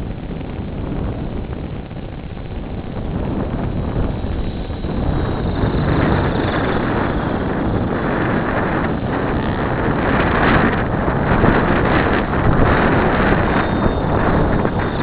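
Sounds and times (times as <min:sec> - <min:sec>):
helicopter rotor noise: 0:00.0 - 0:15.0
wind buffeting microphone: 0:00.0 - 0:15.0
faint high-pitched squeal: 0:03.7 - 0:15.0.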